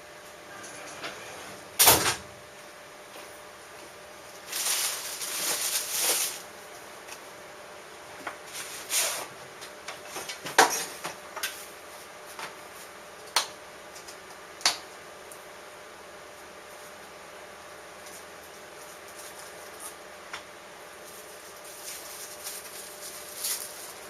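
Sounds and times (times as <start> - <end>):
objects scraping and rustling: 4.4 - 6.5, 21.0 - 24.0.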